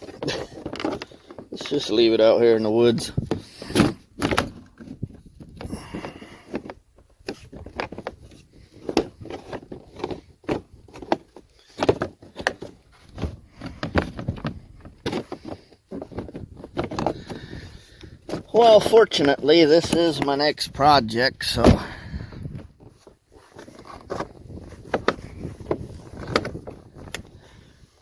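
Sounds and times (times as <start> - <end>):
rustling: 21.5 - 28.0.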